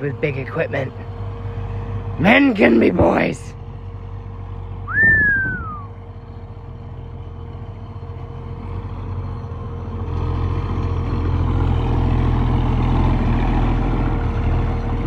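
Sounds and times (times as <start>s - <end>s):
tractor diesel engine running: 0.0s - 15.0s
high tone sliding downward: 4.8s - 6.0s.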